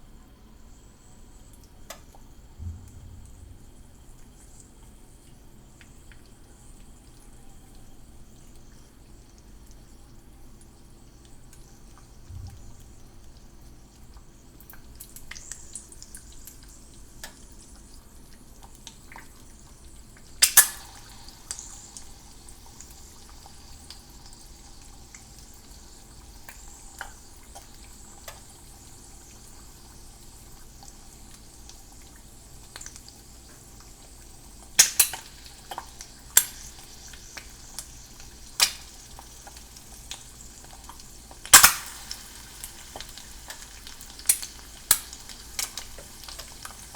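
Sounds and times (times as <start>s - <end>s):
egg sizzling in a pan: 3.6s - 46.9s
fat popping: 34.8s - 35.2s, 41.5s - 42.1s.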